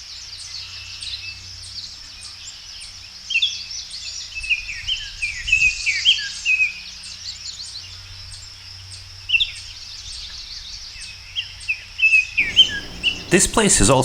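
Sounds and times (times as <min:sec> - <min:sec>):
songbirds chirping and twittering: 0:12.4 - 0:14.0
steady high hiss: 0:12.4 - 0:14.0.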